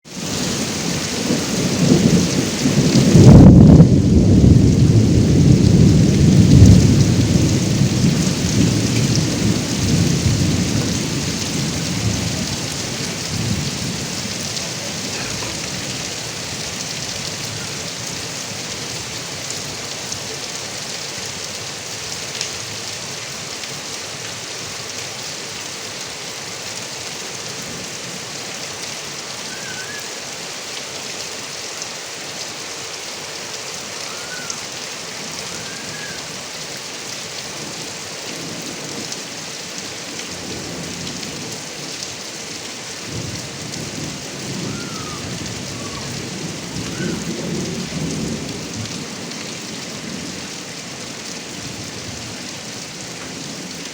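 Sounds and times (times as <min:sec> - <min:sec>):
rain pouring off gutter spout: 0:00.0 - 0:53.9
thunder rumbling: 0:00.2 - 0:19.1, 0:43.1 - 0:49.2.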